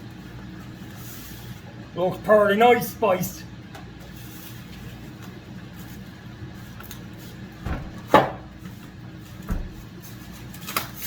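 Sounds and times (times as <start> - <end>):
dull thumps: 7.6 - 8.5.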